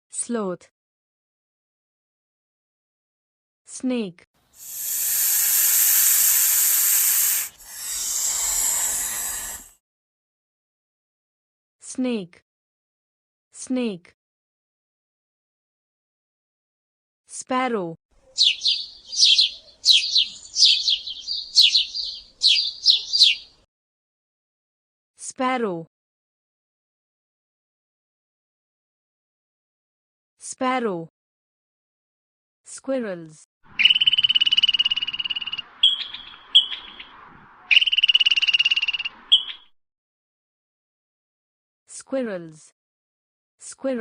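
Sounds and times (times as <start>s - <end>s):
sparrow chirping: 4.6s - 9.7s, 18.2s - 23.6s, 33.7s - 39.7s
squirrel chattering alarm call: 4.6s - 9.7s, 18.3s - 23.6s, 33.7s - 37.1s, 37.7s - 39.7s.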